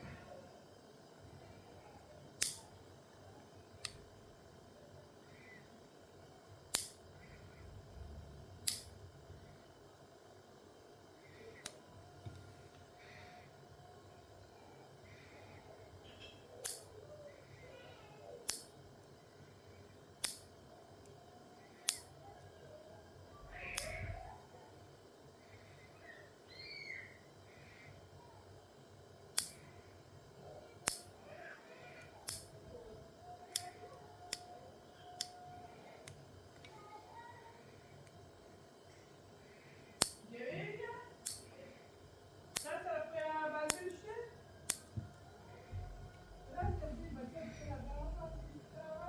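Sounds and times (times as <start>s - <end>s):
nail clippers clicking: 2.4s - 2.7s, 3.8s - 4.0s, 6.7s - 7.1s, 8.7s - 9.0s, 16.6s - 17.0s, 18.5s - 18.8s, 20.2s - 21.2s, 21.9s - 22.2s, 23.7s - 24.2s, 29.4s - 29.7s, 30.8s - 31.2s, 32.0s - 32.6s, 33.5s - 34.5s, 35.2s - 35.4s, 40.0s - 40.3s, 41.2s - 41.5s, 42.6s - 42.8s, 43.7s - 44.0s, 44.7s - 45.0s.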